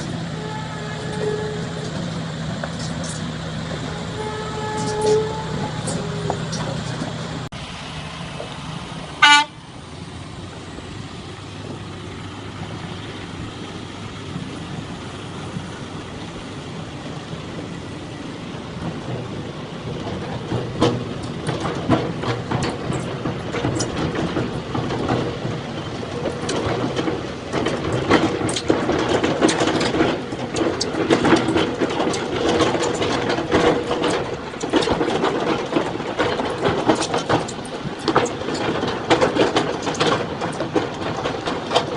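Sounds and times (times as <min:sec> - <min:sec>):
clanking and rattling: 0:00.0 - 0:07.6, 0:09.2 - 0:41.9
heavy machine noise: 0:00.0 - 0:41.9
short horn toot: 0:09.2 - 0:09.6.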